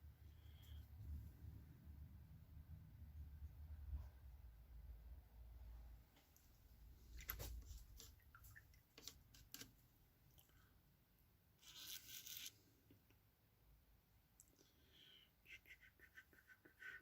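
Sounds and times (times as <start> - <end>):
scratchy rustle: 11.6 - 12.6.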